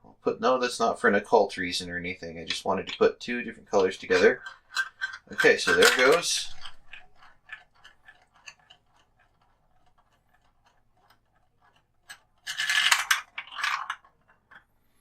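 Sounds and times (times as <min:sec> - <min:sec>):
marble clicking through marble run: 0:02.4 - 0:14.7.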